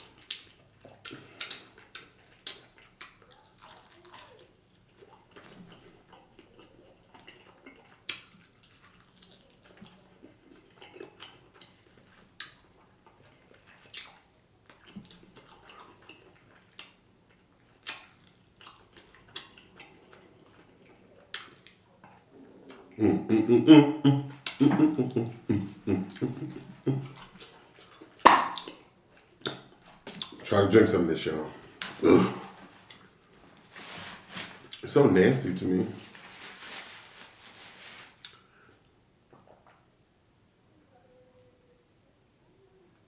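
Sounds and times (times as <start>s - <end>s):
wet chewing and mouth smacking: 0.0s - 23.0s, 24.3s - 30.5s.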